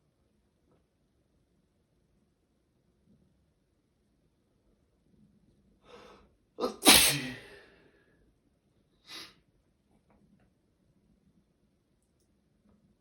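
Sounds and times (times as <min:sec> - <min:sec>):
person sneezing loudly: 0:06.6 - 0:07.7.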